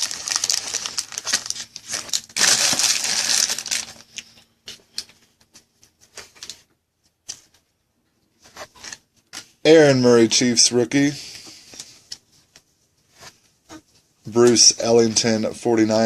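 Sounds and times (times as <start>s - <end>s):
foil wrapper tearing and crinkling: 0.0s - 4.0s.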